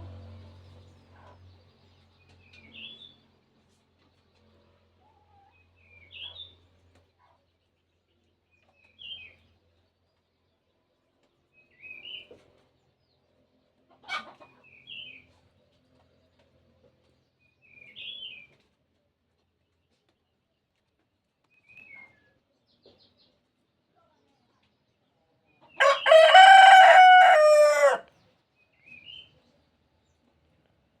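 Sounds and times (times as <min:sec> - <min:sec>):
chickens chirping: 0:13.7 - 0:15.8, 0:25.6 - 0:28.0
rooster crowing: 0:25.8 - 0:28.1.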